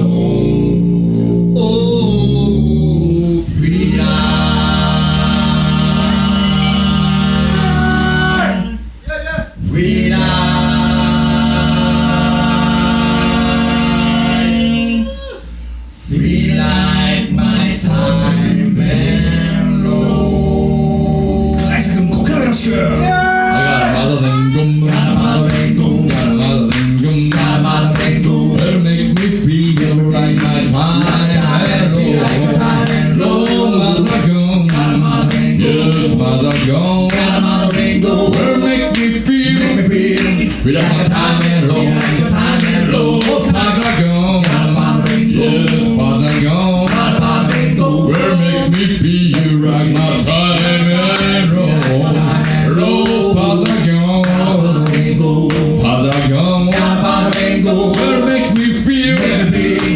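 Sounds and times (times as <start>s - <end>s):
male a cappella group singing: 0.0s - 59.9s
percussive clicks keeping beat: 24.8s - 59.9s.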